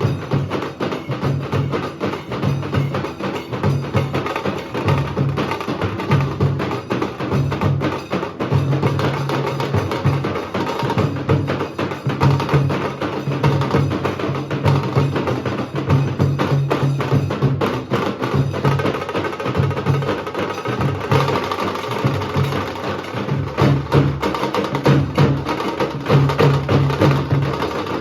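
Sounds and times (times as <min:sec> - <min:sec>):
deep drum beats: 0:00.0 - 0:28.0.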